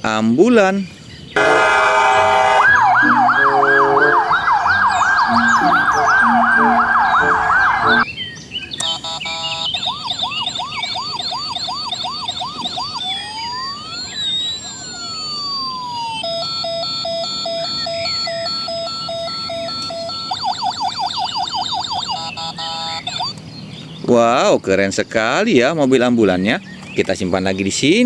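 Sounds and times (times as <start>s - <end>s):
electronic ambulance siren: 1.4s - 8.1s, 8.8s - 23.4s.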